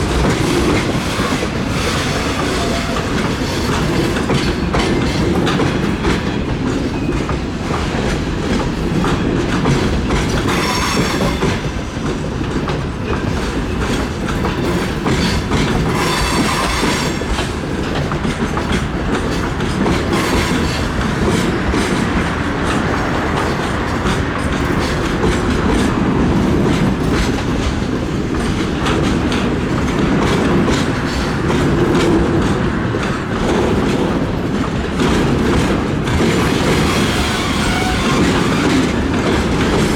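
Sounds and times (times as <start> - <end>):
train wheels clattering over rail joints: 0.0 - 39.9
high wheel squeals: 36.5 - 38.9.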